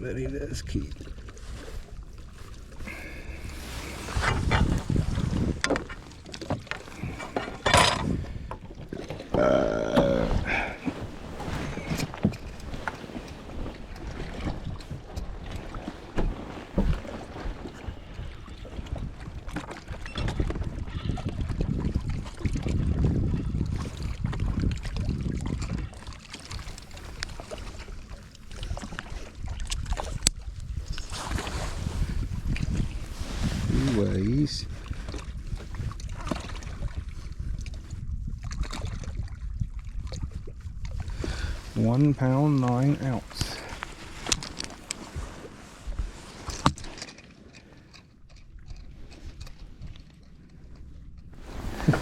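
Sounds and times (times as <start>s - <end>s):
water around a boat: 0.0s - 52.0s
wind: 0.0s - 52.0s
handling clicks and thumps: 5.6s - 8.2s.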